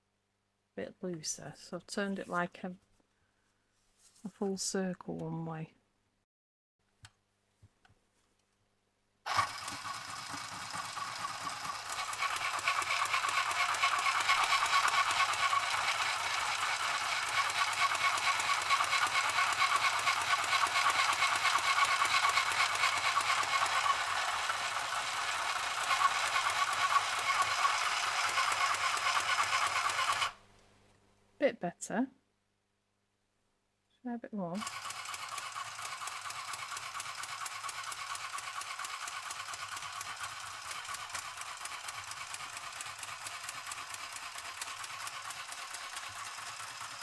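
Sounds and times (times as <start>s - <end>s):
sewing machine needle rattle: 9.3s - 30.4s, 34.6s - 47.0s.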